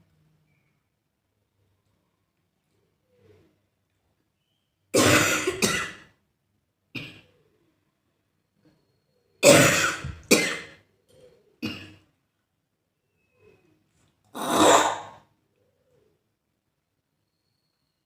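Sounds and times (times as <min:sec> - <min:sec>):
person coughing loudly: 0:05.0 - 0:06.1, 0:09.4 - 0:10.8, 0:14.4 - 0:15.2.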